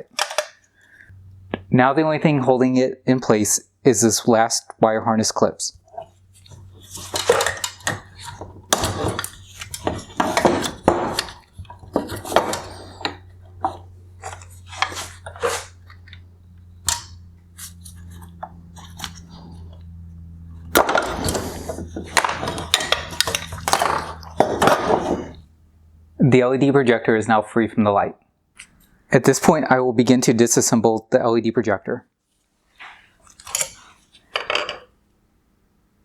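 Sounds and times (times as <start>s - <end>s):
plastic parts clicking and rattling: 0.0s - 0.7s, 5.8s - 19.8s, 20.6s - 25.5s, 32.8s - 34.9s.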